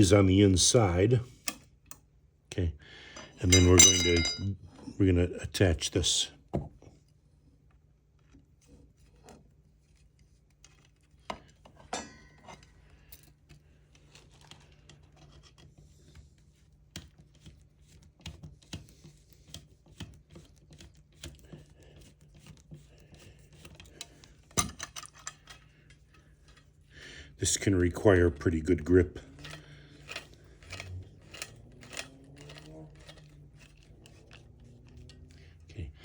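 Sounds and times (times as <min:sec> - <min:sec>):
metal parts screwed together: 0:03.2 - 0:04.5, 0:23.6 - 0:26.7, 0:29.3 - 0:35.4.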